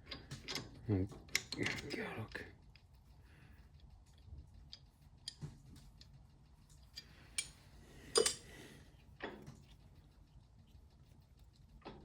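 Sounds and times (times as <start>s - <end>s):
small metal parts clicking: 6.7s - 8.4s.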